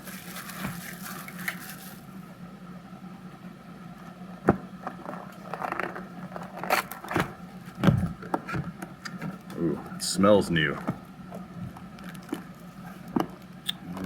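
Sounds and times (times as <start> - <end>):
cardboard scraping and crackling: 4.9 - 9.5.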